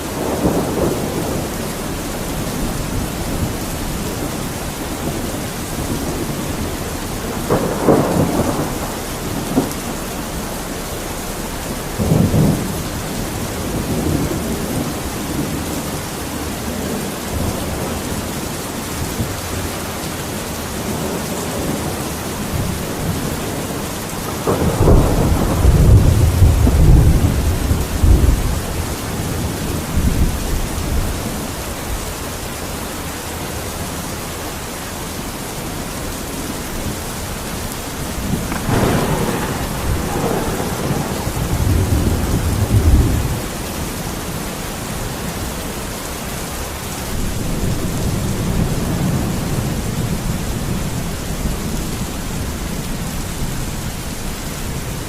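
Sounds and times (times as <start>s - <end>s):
rolling thunder: 0.0s - 31.7s, 37.7s - 55.0s
steady rain falling: 0.0s - 55.0s.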